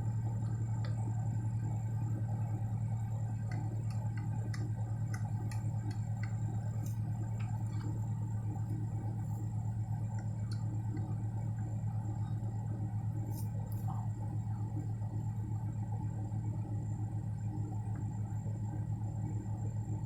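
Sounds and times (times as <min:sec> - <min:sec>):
car engine idling: 0:00.0 - 0:14.7.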